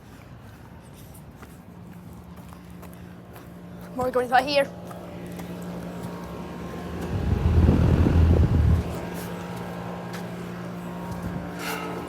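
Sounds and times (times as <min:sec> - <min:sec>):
air conditioner units humming: 0:00.0 - 0:12.0
low rumble: 0:06.8 - 0:09.0.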